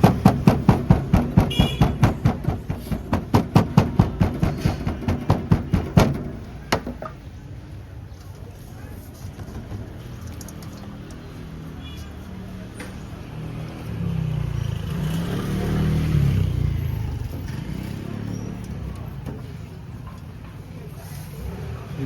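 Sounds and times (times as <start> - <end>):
street bustle: 0.0 - 22.0
vehicle engine passing: 12.5 - 19.8.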